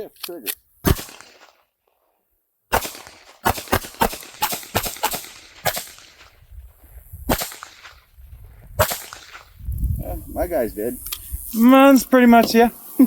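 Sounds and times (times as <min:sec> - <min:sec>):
pistol shots: 0:00.8 - 0:01.6, 0:02.7 - 0:06.4, 0:07.3 - 0:08.0, 0:08.8 - 0:09.5.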